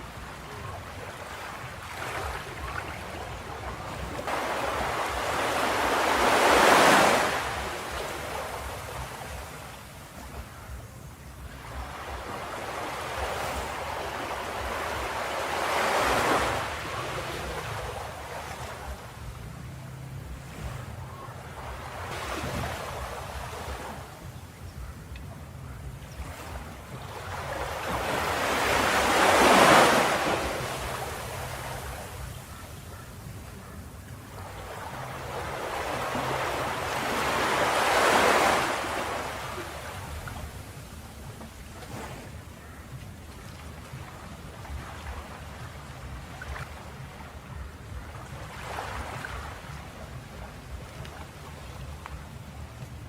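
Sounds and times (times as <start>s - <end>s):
low rumble of surf: 0.0s - 53.0s
ocean waves breaking on beach: 0.0s - 53.0s
wave breaking on beach: 1.8s - 9.5s, 11.8s - 19.0s, 27.6s - 32.1s.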